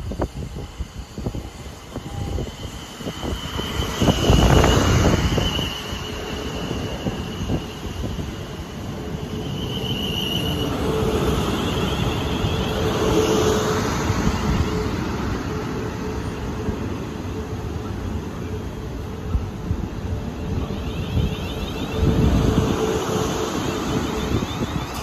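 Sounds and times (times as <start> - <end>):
faint high squeal: 0.0 - 19.4, 20.0 - 25.0
train wheels rumbling on rails: 0.0 - 25.0.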